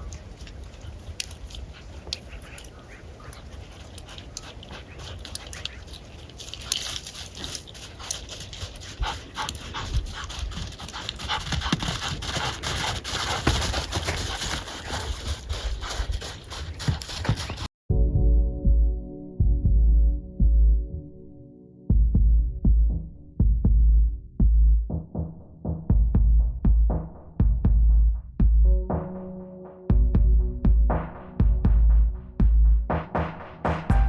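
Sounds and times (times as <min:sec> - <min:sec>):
dog panting: 0:00.0 - 0:17.7
rapid scuffs and clicks: 0:00.0 - 0:17.7.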